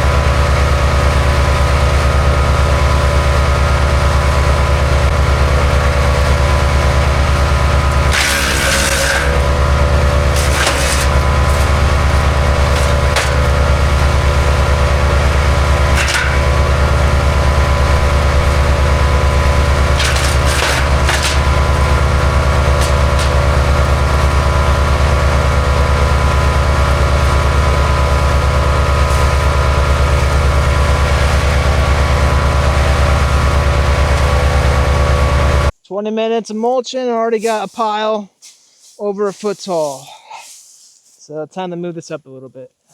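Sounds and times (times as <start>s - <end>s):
wood chipper running: 0.0s - 35.7s
wood cracking and splintering: 7.8s - 24.7s.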